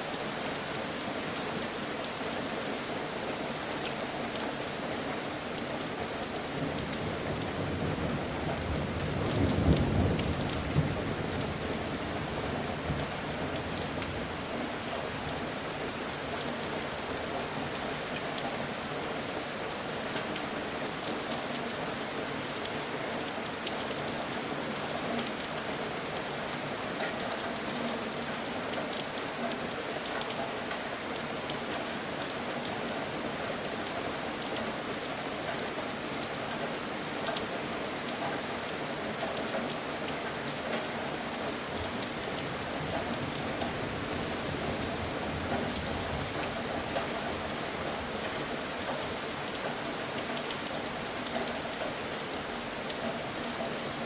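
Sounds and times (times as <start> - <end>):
steady rain falling: 0.0 - 54.0
low rumble of thunder: 7.1 - 12.1.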